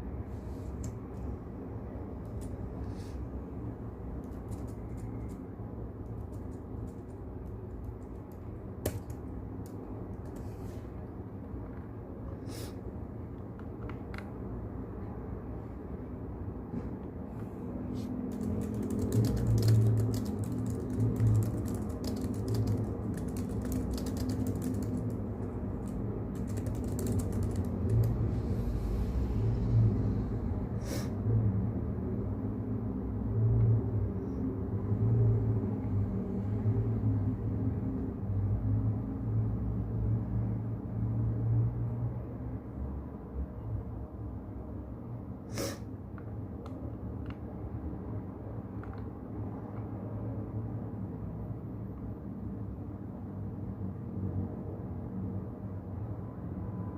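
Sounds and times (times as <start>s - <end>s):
keyboard typing: 4.2s - 10.5s, 18.2s - 28.3s.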